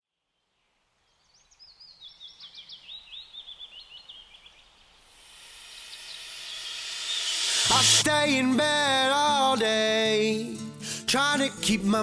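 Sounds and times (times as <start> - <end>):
songbird chirping and whistling: 1.2 - 4.7
faint hiss: 3.6 - 11.1.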